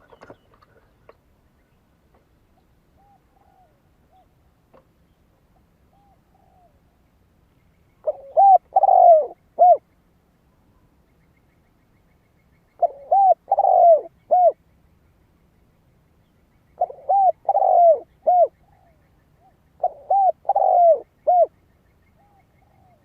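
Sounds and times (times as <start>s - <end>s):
dove cooing: 3.0s - 4.4s, 5.9s - 6.8s, 8.0s - 9.8s, 12.8s - 14.6s, 16.8s - 21.6s.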